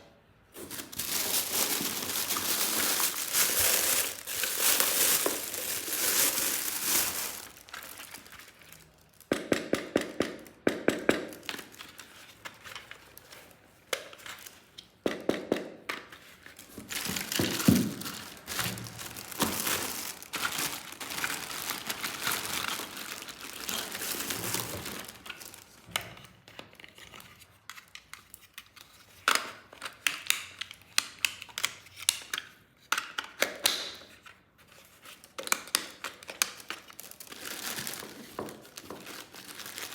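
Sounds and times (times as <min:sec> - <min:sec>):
plastic packaging crinkling: 0:00.6 - 0:09.3, 0:11.2 - 0:14.8, 0:16.4 - 0:26.0, 0:35.1 - 0:39.9.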